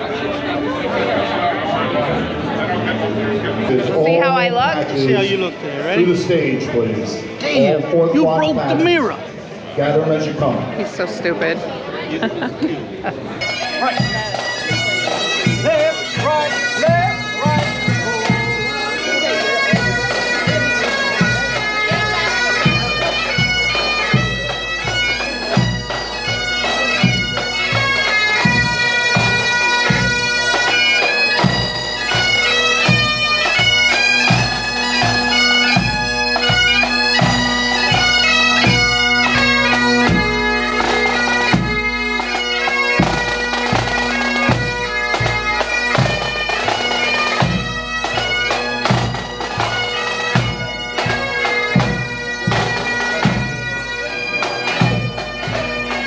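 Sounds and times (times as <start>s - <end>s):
bagpipes playing a tune: 0.0s - 11.6s, 13.3s - 56.0s
drum beating: 13.5s - 56.0s.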